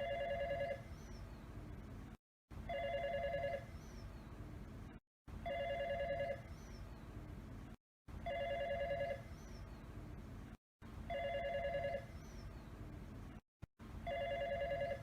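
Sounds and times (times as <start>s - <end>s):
electronic trilling ringtone: 0.0s - 0.9s, 2.7s - 3.7s, 5.4s - 6.5s, 8.2s - 9.3s, 11.1s - 12.1s, 14.0s - 15.0s.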